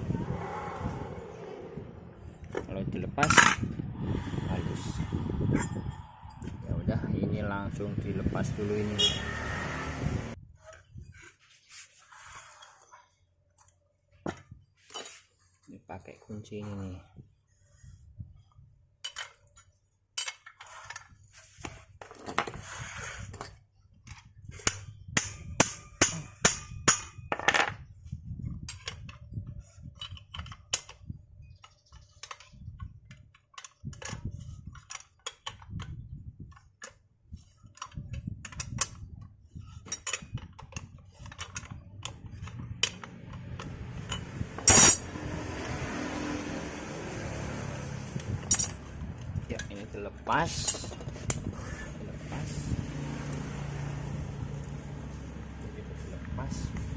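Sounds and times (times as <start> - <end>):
metal tools clinking: 39.8 - 41.8, 44.0 - 45.1, 48.4 - 49.9, 50.5 - 51.3.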